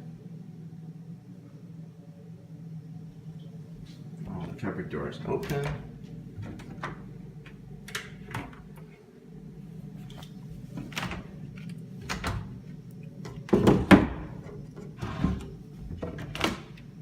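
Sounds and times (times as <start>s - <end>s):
cupboard doors knocking shut: 13.5s - 14.4s.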